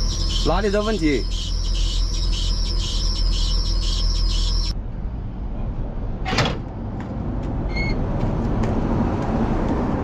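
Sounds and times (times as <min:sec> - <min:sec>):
pulsing chirping squeal: 0:00.0 - 0:04.8.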